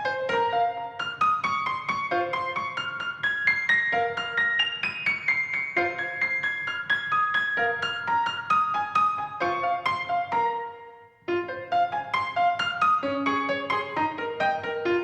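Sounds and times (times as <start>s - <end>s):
piano music: 0.0s - 15.0s.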